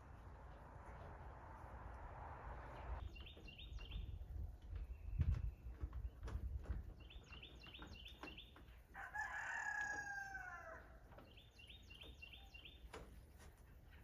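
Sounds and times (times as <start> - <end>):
small bird chirping: 3.0 - 6.2, 7.0 - 8.7, 11.2 - 13.0
rooster crowing: 9.0 - 11.0.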